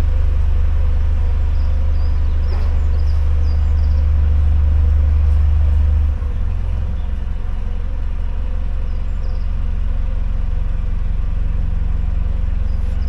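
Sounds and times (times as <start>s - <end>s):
boat diesel engine throbbing: 0.0s - 13.0s
faint bird chirps: 1.4s - 4.6s, 5.3s - 10.6s.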